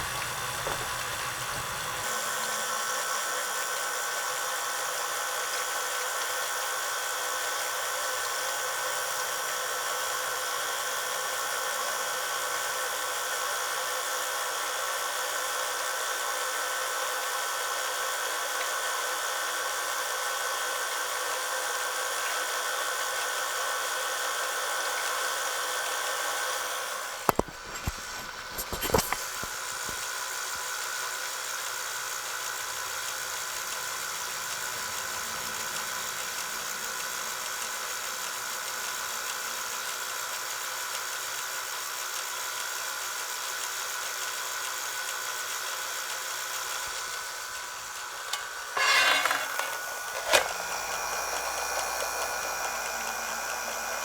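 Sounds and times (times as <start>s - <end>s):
tape rewinder whirring: 0.0s - 8.4s, 27.0s - 30.6s, 45.0s - 54.0s
clicks and knocks: 48.3s - 52.0s.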